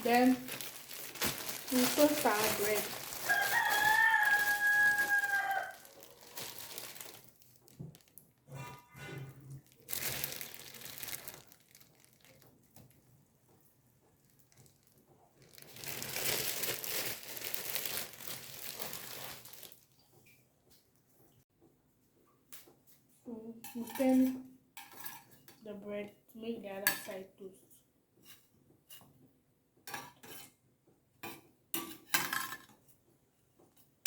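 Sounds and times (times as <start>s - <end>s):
rooster crowing: 3.2s - 6.2s.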